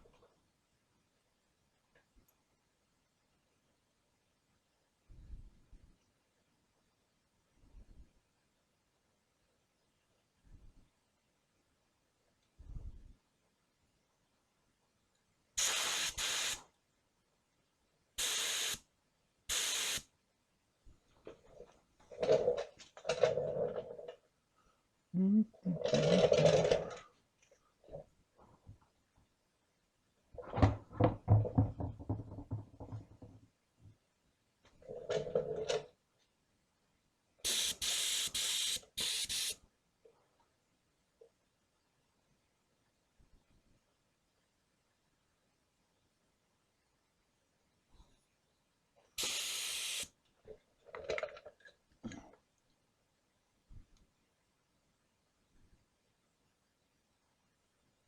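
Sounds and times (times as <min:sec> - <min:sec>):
paint spray gun hissing: 0:15.6 - 0:16.6, 0:18.2 - 0:18.8, 0:19.5 - 0:20.0, 0:37.5 - 0:39.6, 0:49.2 - 0:50.1.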